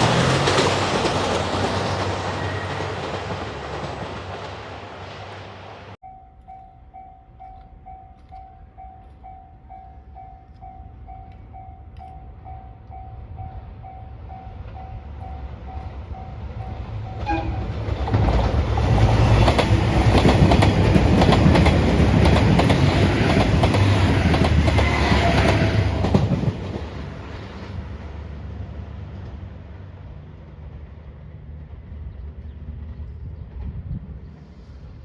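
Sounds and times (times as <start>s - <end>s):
train wheels clacking on rails: 0.0s - 6.0s, 13.9s - 28.2s
crossing warning bell ringing: 6.0s - 17.8s.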